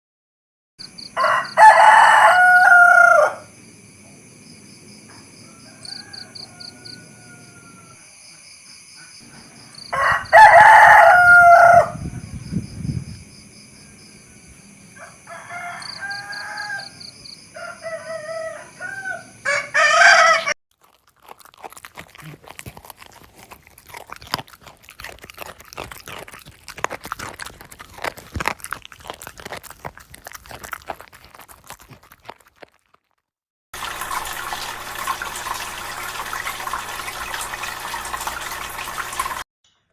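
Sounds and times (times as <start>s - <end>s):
rooster crowing loudly: 1.1s - 3.5s, 5.4s - 8.0s, 9.9s - 12.2s, 15.0s - 20.6s.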